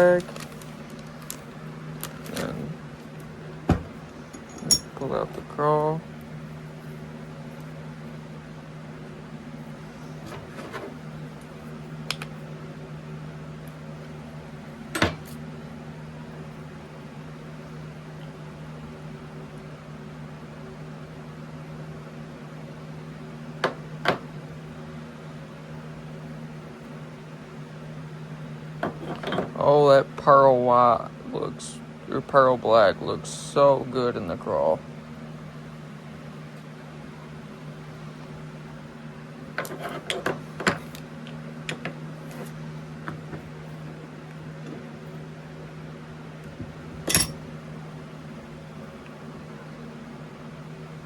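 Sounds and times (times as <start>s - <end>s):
appliance humming: 0.0s - 51.0s
small items clicking and rustling: 0.2s - 2.5s.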